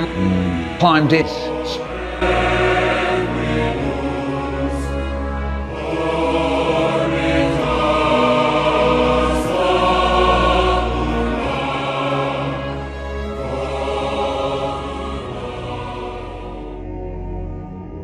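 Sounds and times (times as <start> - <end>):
choir singing held chords: 0.0 - 18.0.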